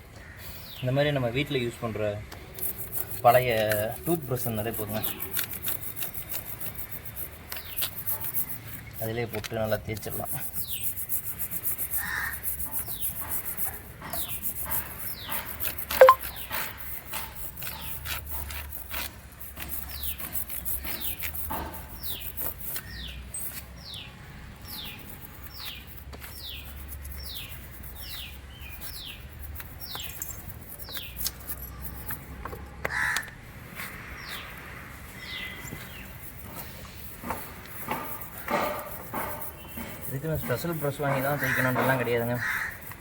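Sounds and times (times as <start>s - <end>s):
toothbrush scrubbing a chain: 2.5s - 32.5s, 34.2s - 43.0s
bird chirping: 14.1s - 16.6s, 19.9s - 32.2s, 34.2s - 42.9s
sharp click: 15.9s - 16.6s.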